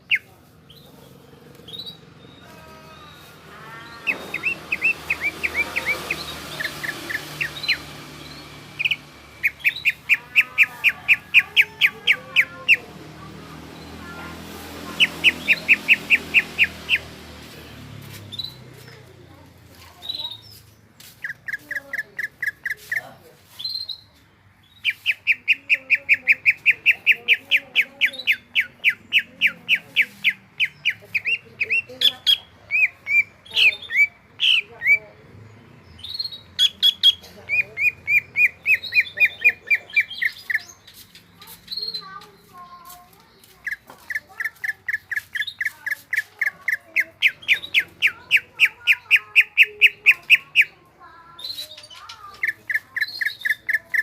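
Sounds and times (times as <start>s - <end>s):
bird singing rapid notes: 0.0s - 19.0s, 19.6s - 54.0s.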